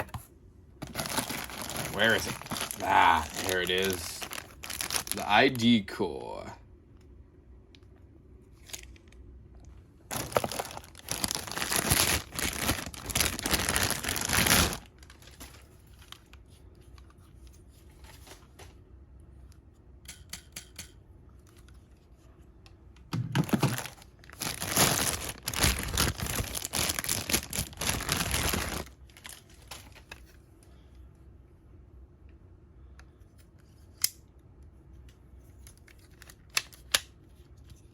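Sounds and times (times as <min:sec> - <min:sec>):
packaging crinkling and tearing: 0:00.8 - 0:05.7, 0:08.6 - 0:09.2, 0:10.1 - 0:16.4, 0:23.4 - 0:30.3.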